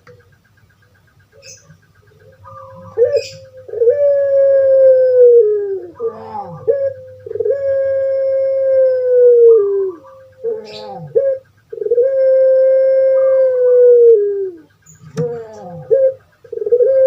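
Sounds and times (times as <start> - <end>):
dove cooing: 0.0 - 17.0.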